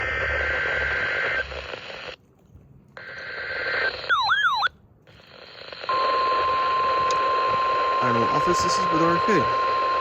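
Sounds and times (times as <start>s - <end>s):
heavy radio static: 0.0s - 2.2s, 3.0s - 4.2s, 5.1s - 10.0s
buzzy two-tone data header: 5.9s - 10.0s.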